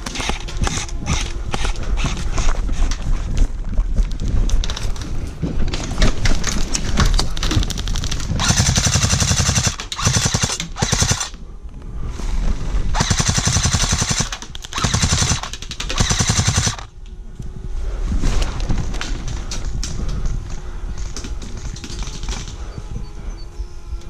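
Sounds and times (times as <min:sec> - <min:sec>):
airsoft gun automatic bursts: 0:07.7 - 0:11.4, 0:12.9 - 0:16.9.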